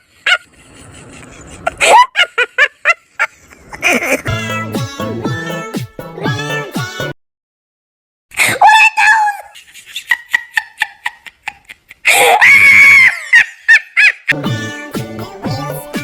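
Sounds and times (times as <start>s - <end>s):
children's music: 4.3s - 7.2s, 14.4s - 16.0s
high-pitched screaming and laughing: 8.4s - 10.3s, 12.0s - 13.8s.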